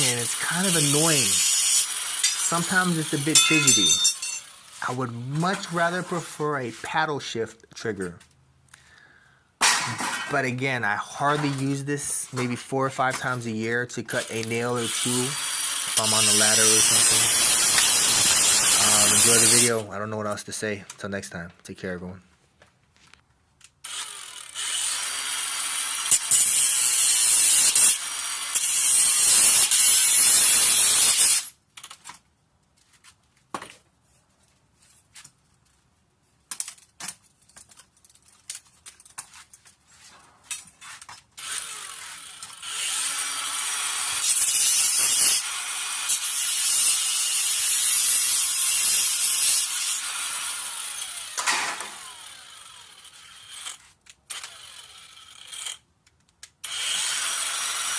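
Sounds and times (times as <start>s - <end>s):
angle grinder cutting: 0.0s - 6.4s, 14.1s - 19.9s, 23.8s - 31.6s, 41.4s - 55.8s, 56.6s - 57.9s.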